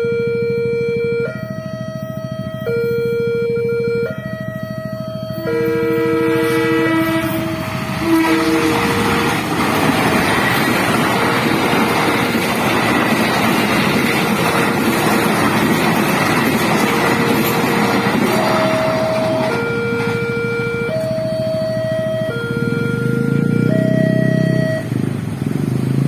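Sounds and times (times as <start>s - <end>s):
level crossing warning siren: 0.0s - 25.0s
train rolling past: 4.2s - 22.3s.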